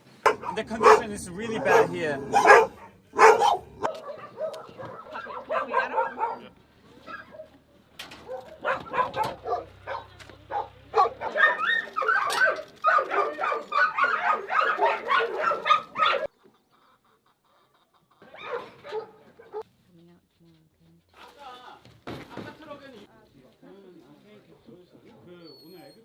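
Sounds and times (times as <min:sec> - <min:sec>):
dogs barking and yelping: 0:00.0 - 0:16.4, 0:18.2 - 0:19.6.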